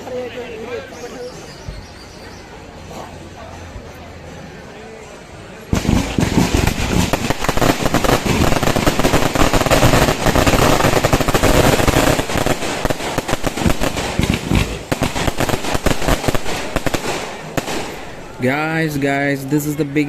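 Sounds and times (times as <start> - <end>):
fireworks crackling bangs: 5.7 - 19.0.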